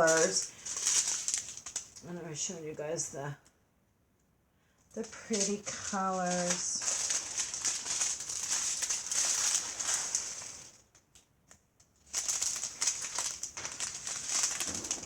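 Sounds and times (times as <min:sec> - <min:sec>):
plastic bags of beads rattling: 0:00.0 - 0:02.3, 0:05.0 - 0:11.2, 0:11.9 - 0:15.0.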